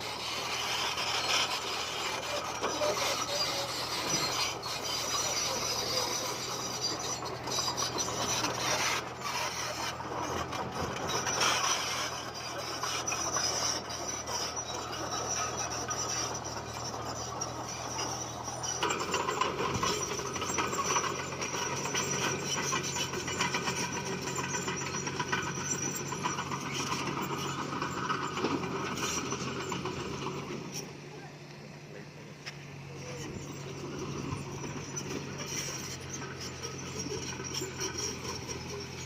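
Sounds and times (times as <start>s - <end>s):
stone scraping and grinding: 0.0s - 30.1s
bulldozer diesel engine under load: 0.0s - 39.0s
steel tracks clanking: 0.0s - 39.0s.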